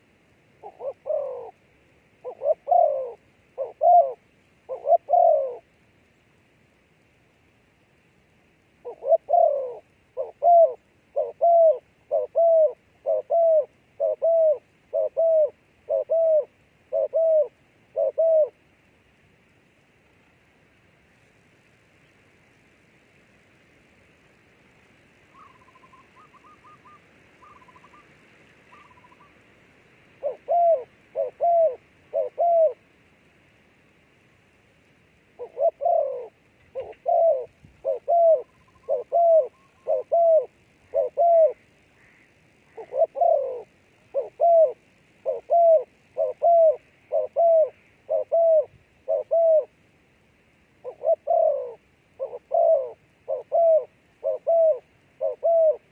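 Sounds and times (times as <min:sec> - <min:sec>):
faint high hiss: 0:00.0 - 0:55.9
dove cooing: 0:00.6 - 0:01.6, 0:02.2 - 0:05.7, 0:08.8 - 0:18.6, 0:25.3 - 0:29.4, 0:30.1 - 0:32.8, 0:35.4 - 0:49.8, 0:50.8 - 0:55.9
faint high trilling bird call: 0:02.2 - 0:05.6, 0:08.8 - 0:18.6, 0:25.3 - 0:29.4, 0:30.2 - 0:32.8, 0:35.4 - 0:49.7, 0:50.8 - 0:55.9.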